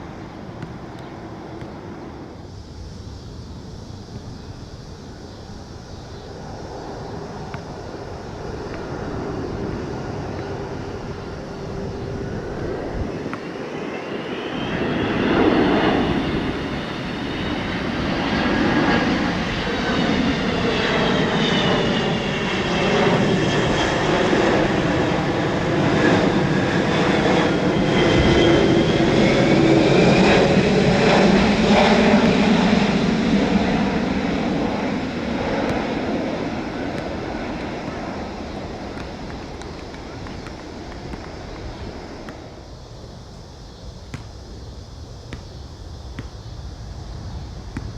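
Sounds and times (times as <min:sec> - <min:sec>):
jet airliner passing: 0:00.0 - 0:47.9.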